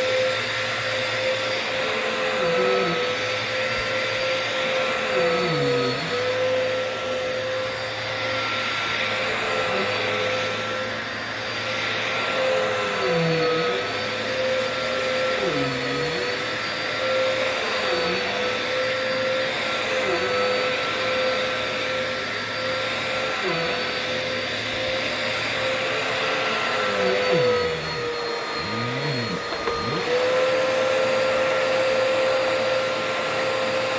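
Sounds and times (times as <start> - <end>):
vacuum cleaner running: 0.0 - 33.9.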